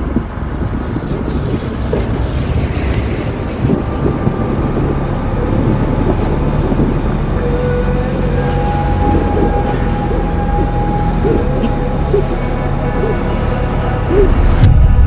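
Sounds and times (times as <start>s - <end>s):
heavy rain downpour: 0.0s - 14.7s
wind gusting across microphone: 0.0s - 15.0s.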